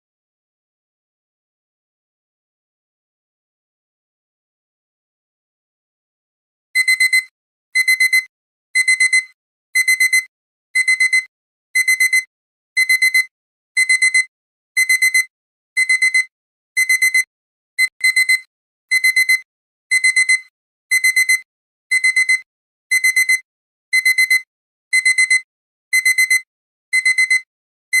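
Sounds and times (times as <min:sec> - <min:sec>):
alarm clock beeping: 0:06.8 - 0:28.0.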